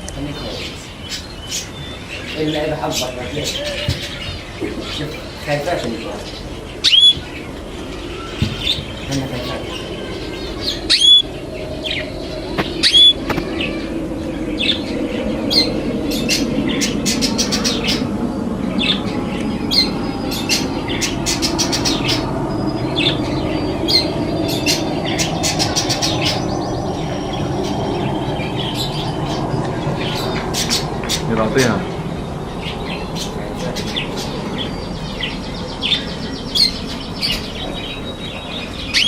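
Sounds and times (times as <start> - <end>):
parrots chirping and squawking: 0.0 - 39.0
steady low hum: 0.0 - 39.0
loud shrill squawk: 8.0 - 11.3, 12.6 - 14.0.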